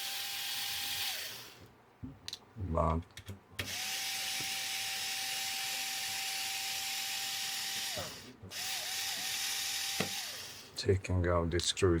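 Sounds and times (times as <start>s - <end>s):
electric screwdriver motor whining: 0.0s - 1.6s, 3.6s - 10.7s.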